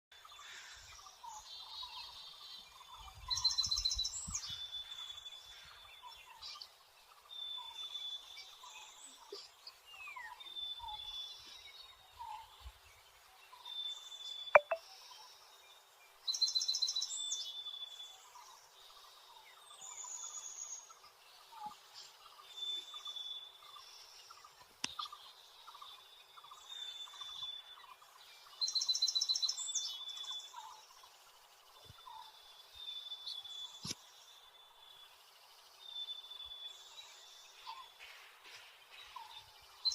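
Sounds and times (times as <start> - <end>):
flat whistled bird note: 14.6 - 14.8.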